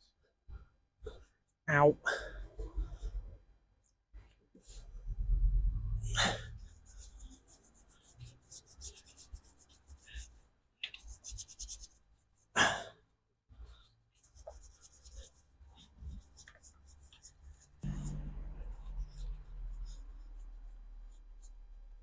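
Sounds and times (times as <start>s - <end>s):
brush scrubbing engine block: 6.4s - 12.0s, 14.1s - 22.0s.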